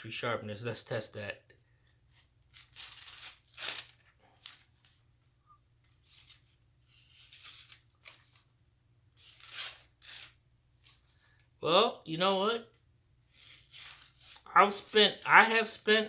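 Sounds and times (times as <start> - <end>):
knife rasping through paper: 9.2 - 10.3, 13.3 - 14.5.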